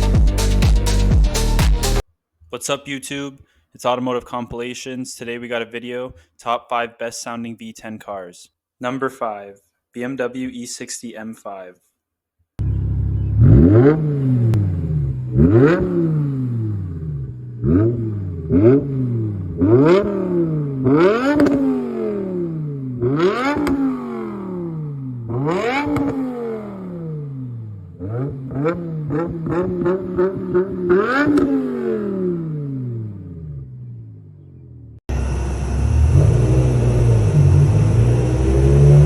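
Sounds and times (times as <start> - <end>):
car engine revving: 12.6 - 39.0.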